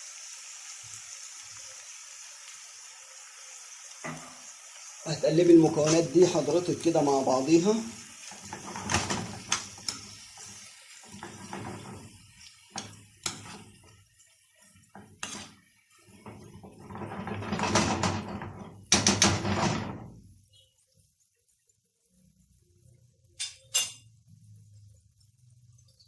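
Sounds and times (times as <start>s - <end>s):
spoon stirring food in a pan: 5.4s - 21.7s
spoon clinking against pan: 23.4s - 24.1s.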